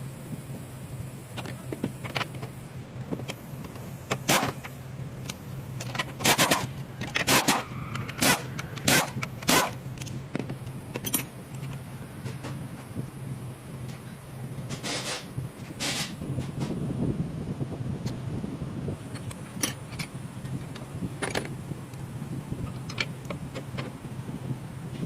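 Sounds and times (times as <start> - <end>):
steady low hum: 0.0 - 25.0
metal tools clinking and scraping: 11.0 - 11.8.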